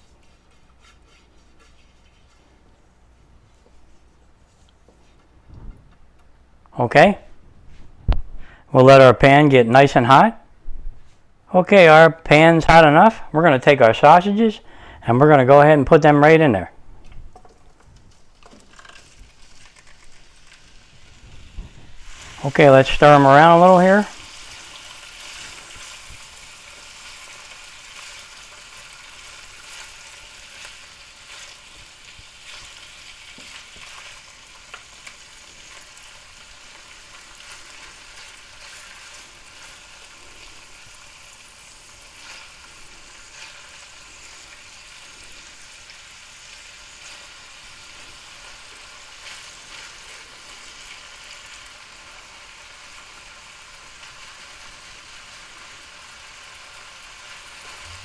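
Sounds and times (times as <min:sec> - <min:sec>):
light scrapes in pan: 0:00.0 - 0:05.3
sausage sizzling in oil: 0:17.2 - 0:58.0.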